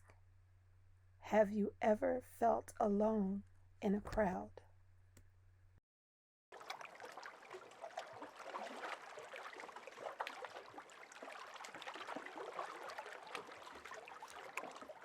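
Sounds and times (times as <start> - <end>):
water lapping over rocks: 6.5 - 15.0.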